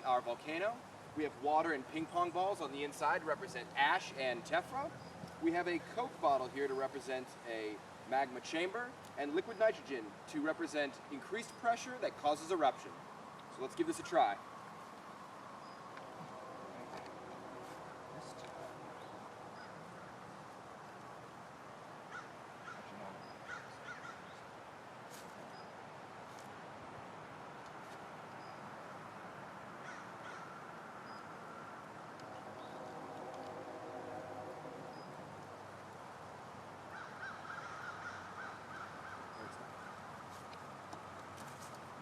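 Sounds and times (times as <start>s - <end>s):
outdoor background hiss: 0.0s - 42.0s
short bird calls: 22.1s - 24.5s, 29.8s - 33.0s, 36.9s - 40.5s.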